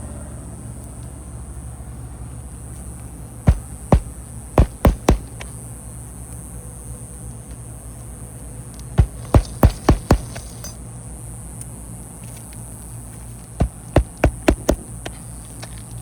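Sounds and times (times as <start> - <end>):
steady low hum: 0.8 - 16.0
hammer striking nails: 3.5 - 5.6, 9.0 - 10.8, 13.6 - 15.2.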